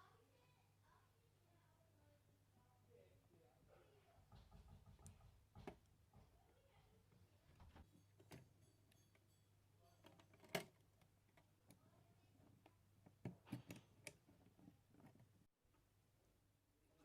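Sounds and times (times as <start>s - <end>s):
clicks and taps of computer parts: 10.0s - 10.8s.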